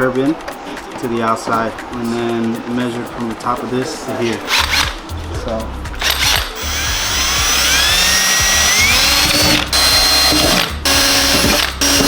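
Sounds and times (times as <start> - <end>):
power drill whining: 4.4 - 5.1, 6.0 - 12.0.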